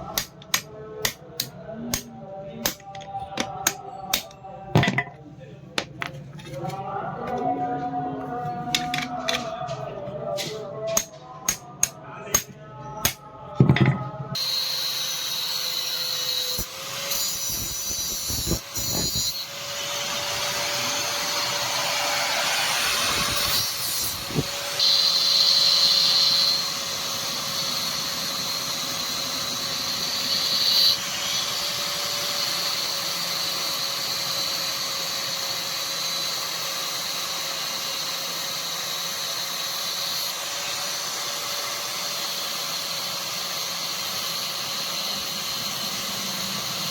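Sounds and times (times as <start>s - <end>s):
electric power tool running: 14.4s - 46.9s.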